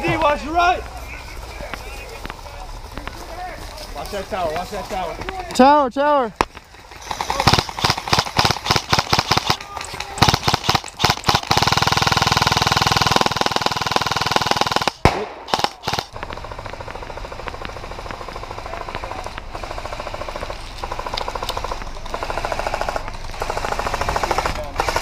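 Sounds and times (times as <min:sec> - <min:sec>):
airsoft machine gun firing: 0:06.9 - 0:25.0.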